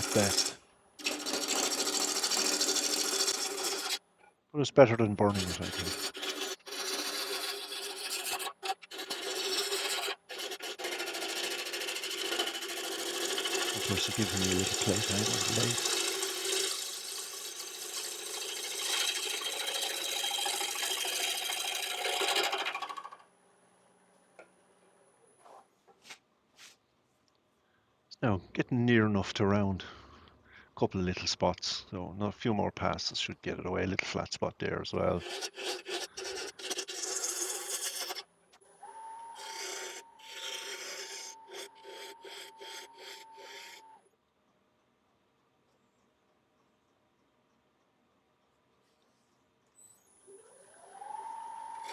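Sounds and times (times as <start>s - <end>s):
lathe gouge scraping wood: 0.0s - 4.0s, 5.2s - 23.2s, 35.0s - 38.2s, 39.3s - 44.0s, 51.6s - 51.9s.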